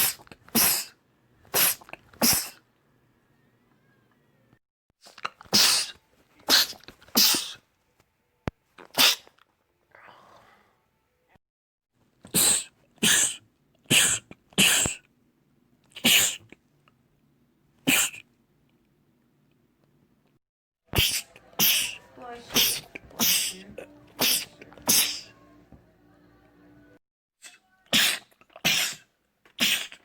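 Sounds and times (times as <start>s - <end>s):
man sneezing: 0.0s - 2.6s, 5.5s - 7.6s, 12.3s - 15.0s, 16.0s - 16.4s, 17.9s - 18.2s, 24.2s - 25.3s.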